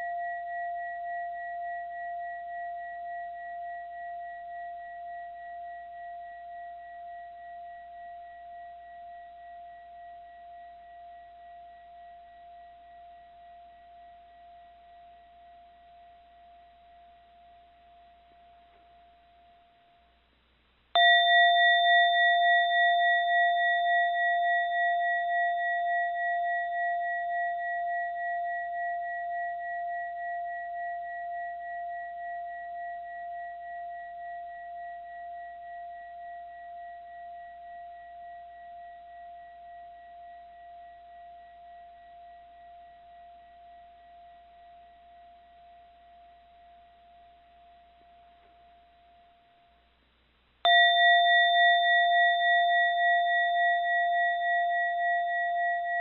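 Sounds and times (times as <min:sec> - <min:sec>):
mindfulness bell ringing: 0:21.0 - 0:31.4, 0:50.7 - 0:56.0.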